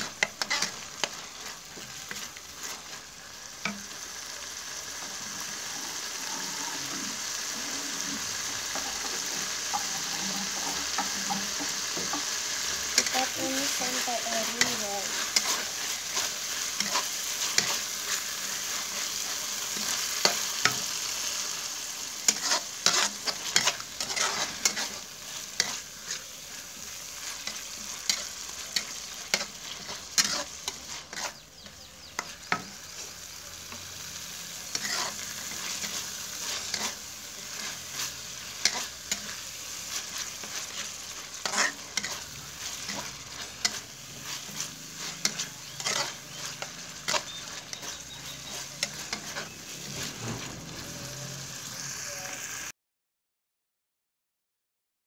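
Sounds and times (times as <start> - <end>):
spatula scraping and knocking pan: 0.0 - 3.0, 8.6 - 21.4, 22.2 - 33.9, 34.7 - 51.2
sauce sizzling in hot oil: 0.0 - 52.7.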